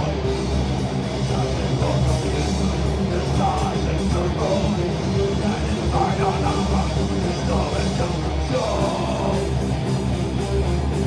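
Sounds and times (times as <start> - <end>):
heavy metal band playing: 0.0 - 11.0.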